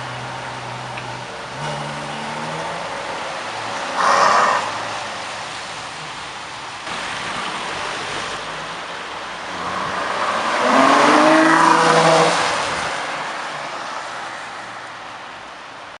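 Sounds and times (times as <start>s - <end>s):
car engine accelerating hard: 9.4s - 12.9s.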